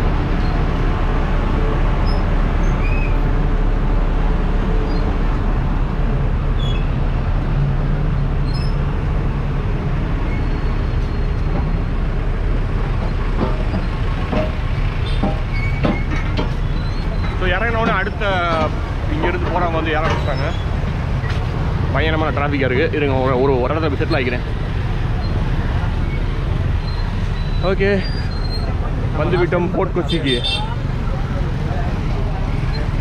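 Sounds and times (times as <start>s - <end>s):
vehicle engines rumbling: 0.0s - 33.0s
knocks: 13.0s - 18.8s.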